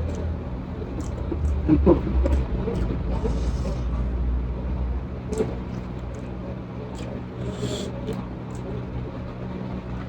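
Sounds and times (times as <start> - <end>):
person eating: 0.0 - 4.2, 6.9 - 8.8
steady low hum: 0.0 - 10.0.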